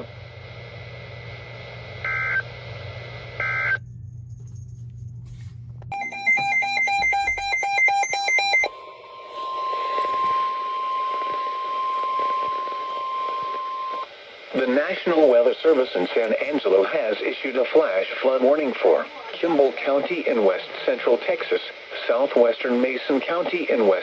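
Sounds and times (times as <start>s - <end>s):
low hum: 0.0s - 14.5s
short beeps: 5.9s - 12.3s
steady warning alarm tone: 5.9s - 14.1s.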